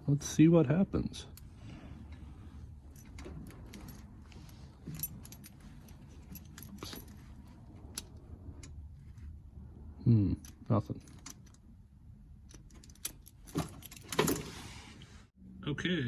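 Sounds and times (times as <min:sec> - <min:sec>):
car keys jangling: 0:01.3 - 0:09.4, 0:10.4 - 0:14.6.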